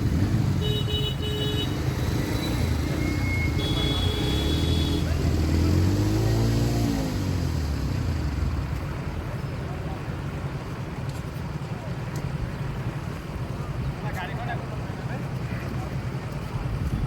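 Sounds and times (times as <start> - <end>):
traffic engines droning: 0.0 - 17.0.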